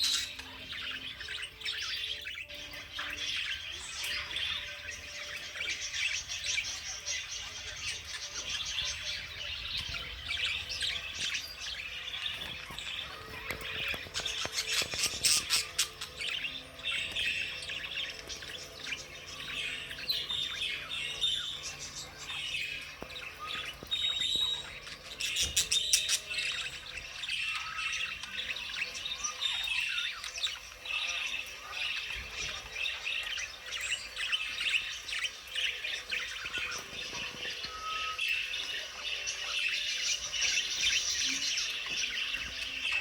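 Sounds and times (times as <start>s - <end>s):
budgerigars chattering and chirping: 0.0s - 43.0s.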